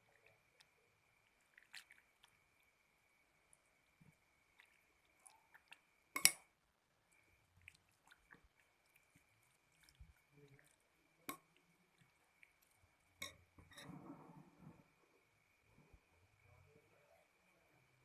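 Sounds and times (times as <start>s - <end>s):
chewing: 0.0s - 2.8s, 3.5s - 6.4s, 7.2s - 13.4s
clicks and taps of eating: 7.6s - 13.9s
faint high whine: 9.0s - 18.0s.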